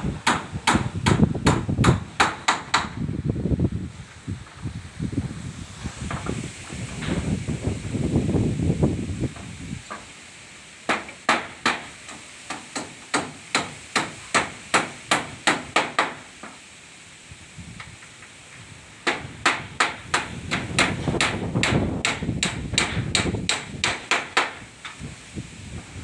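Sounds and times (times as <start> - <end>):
sharp knocks: 19.1 - 24.6.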